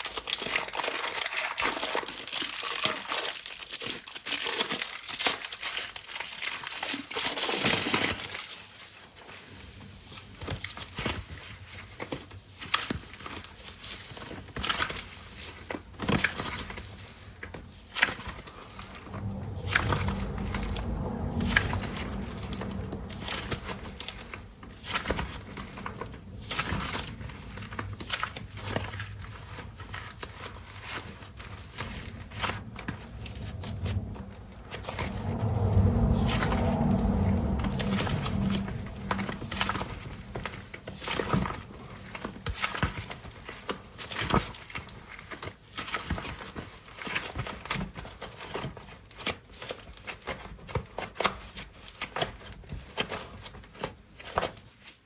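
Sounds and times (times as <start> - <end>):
plastic packaging crinkling: 0.0 - 9.3
low hum: 16.7 - 42.5.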